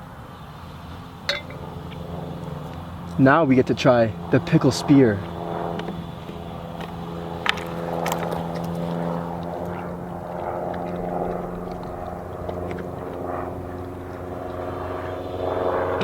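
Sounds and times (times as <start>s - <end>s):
steady motor drone: 0.0s - 16.0s
dog crunching a pickle: 6.8s - 14.9s.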